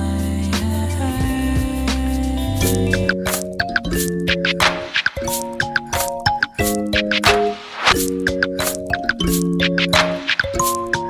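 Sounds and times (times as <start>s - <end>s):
percussive beat: 0.6s - 11.0s
synthesizer chords: 2.5s - 11.0s.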